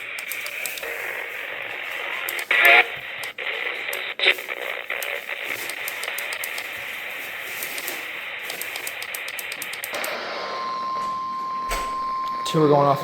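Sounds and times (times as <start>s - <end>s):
faint crackling clicks: 0.0s - 10.2s
radio static hiss: 0.0s - 10.7s
high single-pitch alarm tone: 10.0s - 13.0s.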